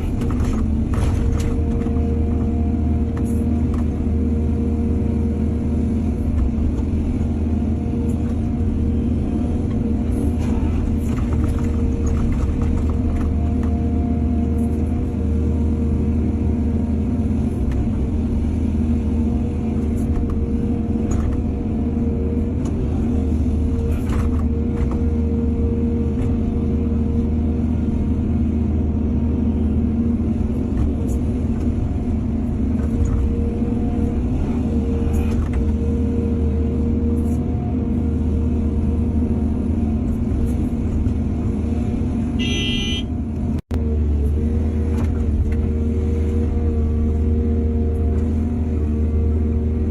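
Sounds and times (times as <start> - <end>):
excavator diesel engine running: 0.0 - 49.9
brief high tone: 42.4 - 43.1.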